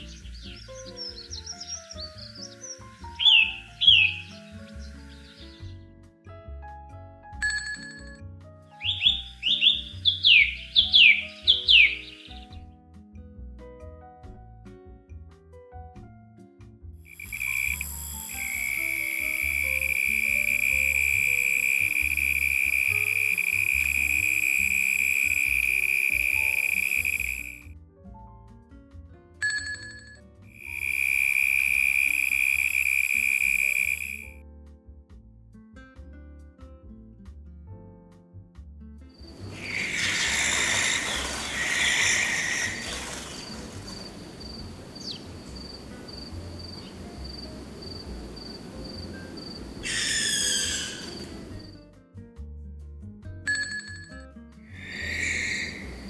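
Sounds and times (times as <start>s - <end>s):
soft background music: 0.0s - 16.9s
high-pitched trilling animal call: 8.9s - 12.3s, 17.0s - 27.7s, 30.6s - 34.4s, 39.2s - 51.7s, 54.7s - 56.0s
high thin chirping: 17.0s - 27.7s, 30.5s - 34.4s, 39.2s - 51.8s, 54.7s - 56.0s.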